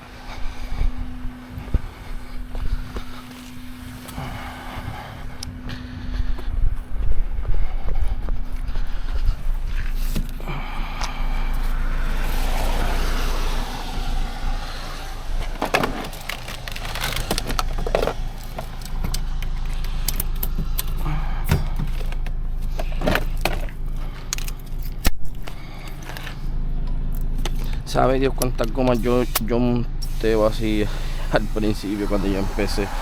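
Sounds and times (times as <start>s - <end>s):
steady low hum: 0.0s - 33.0s
hissing noise: 11.1s - 21.2s, 30.0s - 33.0s.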